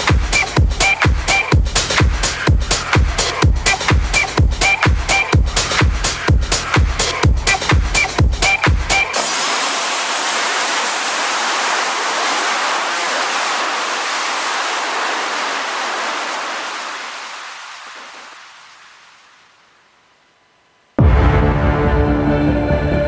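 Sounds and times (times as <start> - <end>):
rushing white noise hiss: 0.0 - 21.0.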